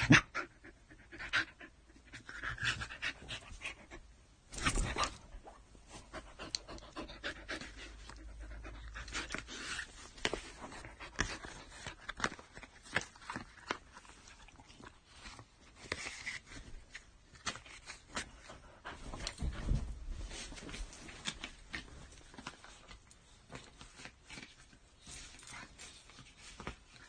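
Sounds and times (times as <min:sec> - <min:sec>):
dog panting: 0:05.9 - 0:09.6.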